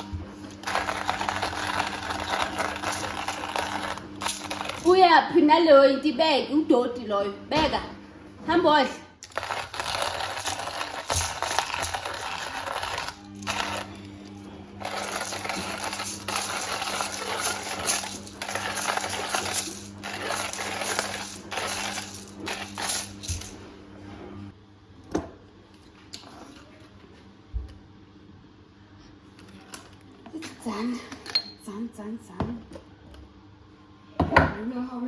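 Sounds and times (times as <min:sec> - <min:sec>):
grinder motor hum: 0:00.0 - 0:05.0, 0:09.2 - 0:24.4
coffee beans clattering in grinder: 0:00.0 - 0:05.1, 0:09.2 - 0:23.6.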